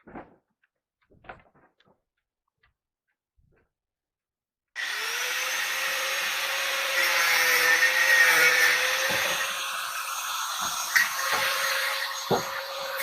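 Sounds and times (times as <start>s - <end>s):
table saw cutting wood: 4.8s - 13.0s.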